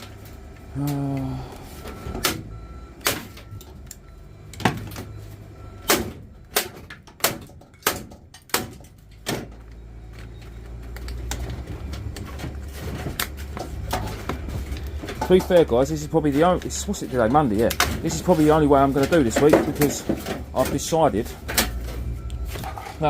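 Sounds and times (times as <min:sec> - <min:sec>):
scrap items knocking and clattering: 0:10.8 - 0:23.0.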